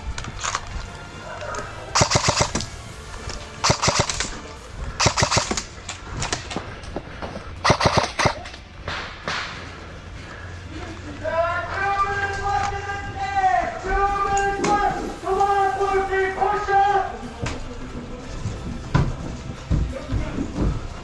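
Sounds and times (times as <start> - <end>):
airsoft gun bursts: 1.9 - 2.9, 3.6 - 6.0, 7.6 - 8.6.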